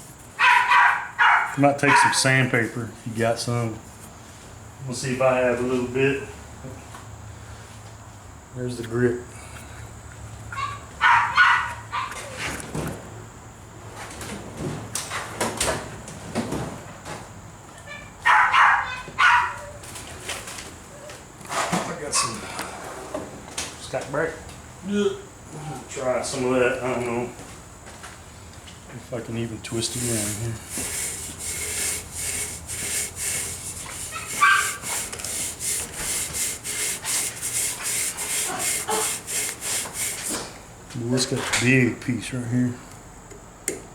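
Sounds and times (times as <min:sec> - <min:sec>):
dog barking: 0:00.4 - 0:02.2, 0:10.6 - 0:12.1, 0:18.2 - 0:19.8, 0:34.1 - 0:34.8
sandpaper rubbing on metal: 0:29.7 - 0:40.5.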